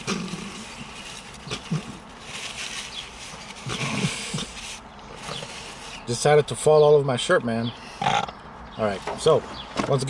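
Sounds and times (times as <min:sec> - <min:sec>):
crunchy chewing: 0:00.0 - 0:06.1.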